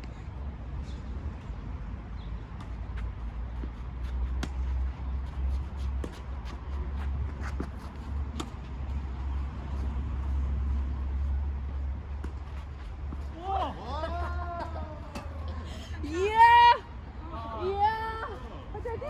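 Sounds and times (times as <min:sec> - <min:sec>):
shoes scuffing on court: 0:02.6 - 0:13.7.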